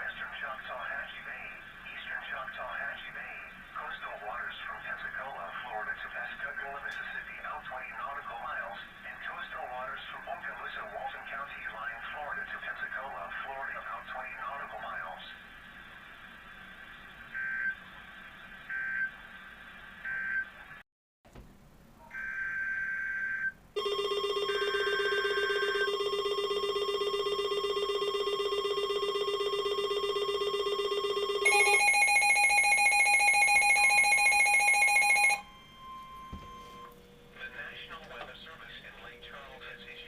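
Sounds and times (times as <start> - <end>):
electronic alert tone: 22.2 - 37.0.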